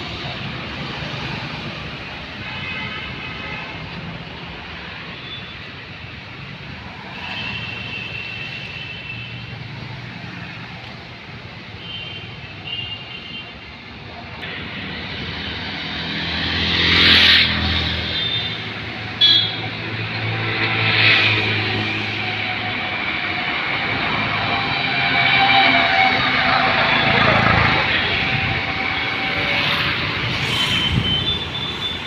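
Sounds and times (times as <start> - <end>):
car horn honks: 19.2 - 19.6
vehicle passing close: 20.2 - 32.0.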